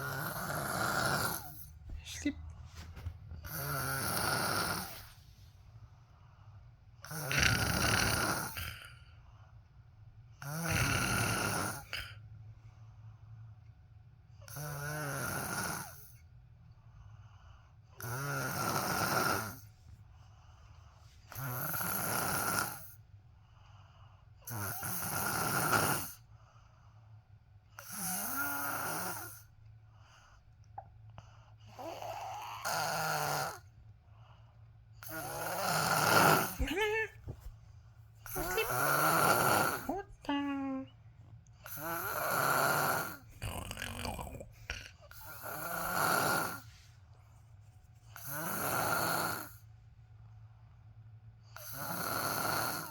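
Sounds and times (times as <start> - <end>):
snoring: 0.0 - 1.7, 3.4 - 5.2, 7.0 - 9.1, 10.4 - 12.2, 14.4 - 16.2, 17.9 - 19.7, 21.3 - 23.0, 24.4 - 26.3, 27.8 - 29.5, 31.6 - 33.7, 35.0 - 37.1, 38.2 - 40.1, 41.6 - 46.8, 48.1 - 49.7, 51.5 - 52.9.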